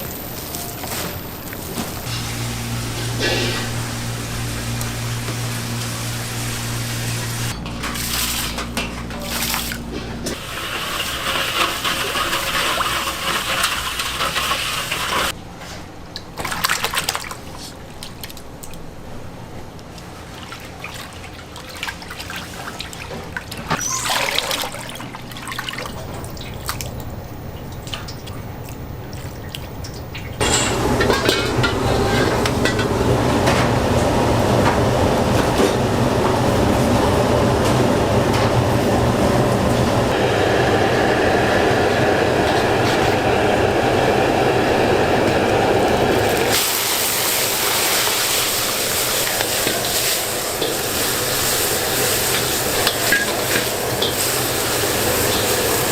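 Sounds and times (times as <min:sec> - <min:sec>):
water running and pouring: 0:09.2 - 0:15.3, 0:43.9 - 0:55.9.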